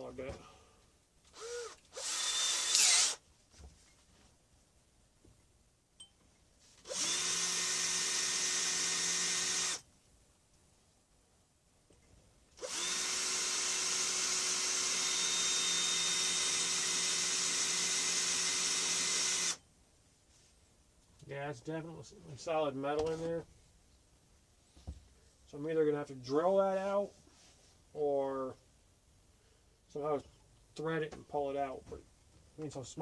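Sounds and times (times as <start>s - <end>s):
electric drill drilling into metal: 1.3s - 3.2s, 6.8s - 9.8s, 12.6s - 19.6s.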